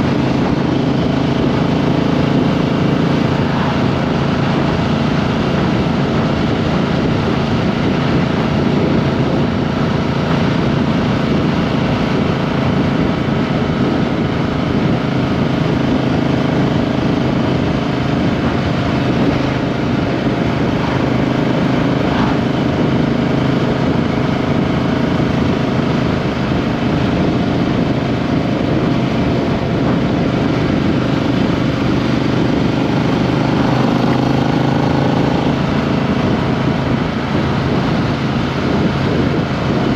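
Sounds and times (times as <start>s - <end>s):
motorcycle engine running: 0.0s - 39.9s
road and wind noise: 0.0s - 39.9s.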